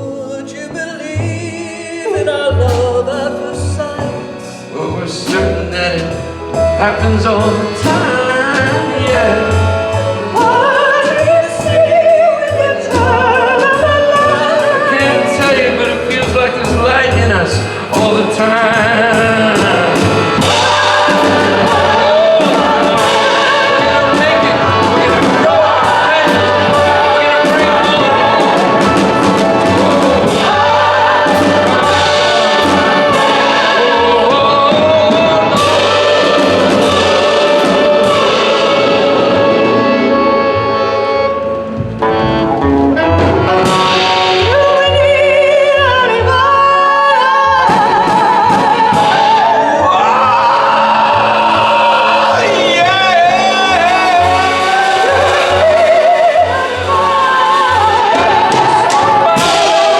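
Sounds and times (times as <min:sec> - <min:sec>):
choir singing: 0:00.0 - 0:59.9
instrumental accompaniment: 0:00.0 - 0:59.9.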